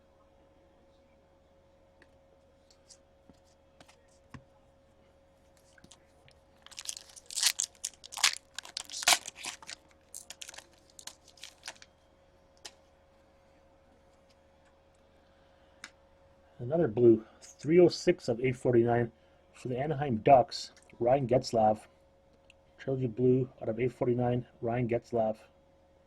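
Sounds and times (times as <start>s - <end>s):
faint steady hum: 0.0s - 26.0s
plastic wrapper crinkling: 6.6s - 11.9s.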